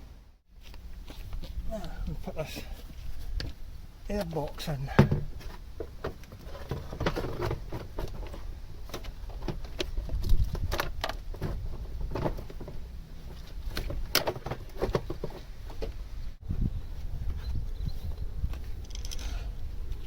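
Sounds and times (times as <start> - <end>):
metallic clicks and clunks: 13.7 - 16.0.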